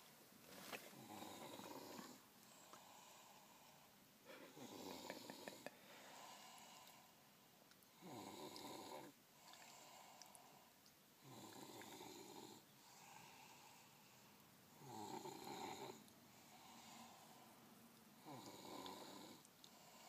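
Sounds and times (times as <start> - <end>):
soft breaths: 0.0 - 20.0
rough snores: 1.0 - 2.2, 4.5 - 5.6, 8.0 - 10.1, 11.2 - 13.5, 14.8 - 17.2, 18.2 - 19.4.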